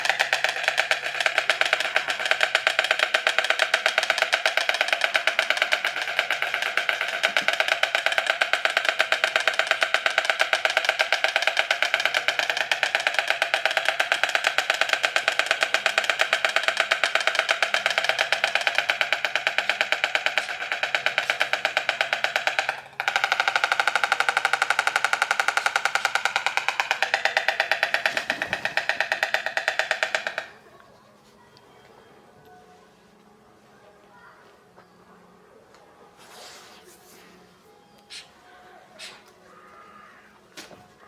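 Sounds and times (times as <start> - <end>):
storks clattering bills: 0.0 - 30.6.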